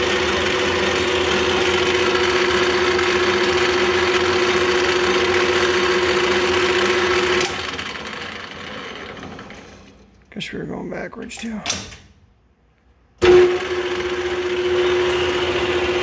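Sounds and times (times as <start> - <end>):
lathe gear whine: 0.0 - 10.0, 13.2 - 16.0.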